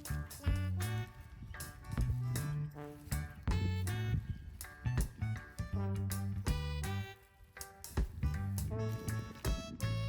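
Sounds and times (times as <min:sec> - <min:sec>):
jazzy background music: 0:00.0 - 0:10.0.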